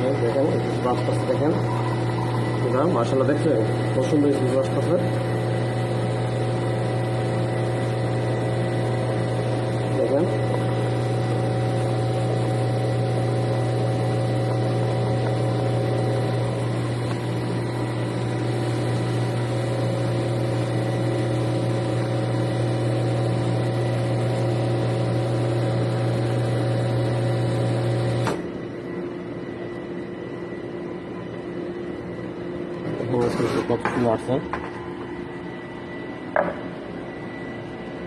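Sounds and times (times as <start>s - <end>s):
espresso machine pump humming: 0.0s - 33.8s.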